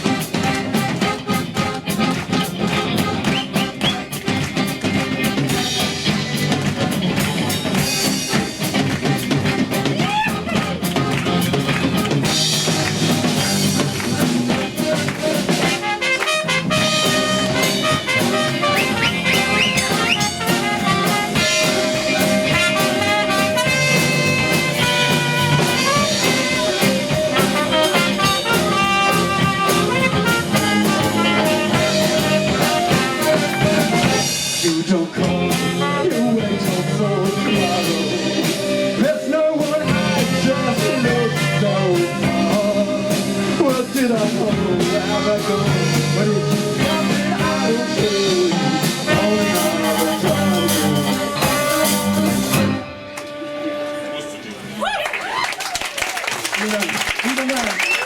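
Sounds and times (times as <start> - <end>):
drum kit beat: 0.0 - 54.0
held lead melody: 0.0 - 54.6.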